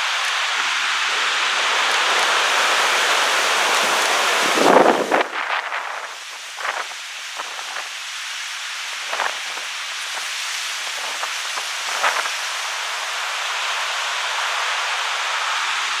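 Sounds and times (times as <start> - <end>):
heavy surf breaking: 0.0 - 6.9.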